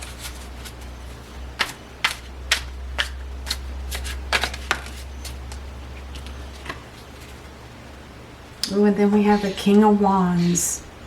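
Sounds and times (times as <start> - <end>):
cards being shuffled: 0.0 - 7.5
faint low hum: 0.0 - 11.0.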